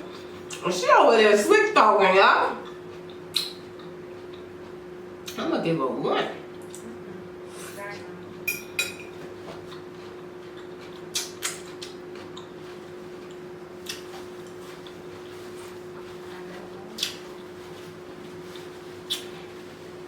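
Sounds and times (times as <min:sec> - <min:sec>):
steady low hum: 0:00.0 - 0:20.0
chewing crunches: 0:09.7 - 0:12.6, 0:13.2 - 0:15.0.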